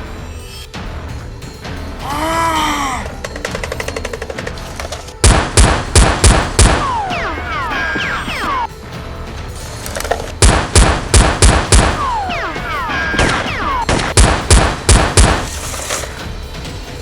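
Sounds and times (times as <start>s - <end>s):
single gunshot: 5.2s - 7.0s, 10.4s - 12.1s, 13.1s - 15.6s
gunfire bursts: 5.2s - 8.7s, 10.4s - 15.7s.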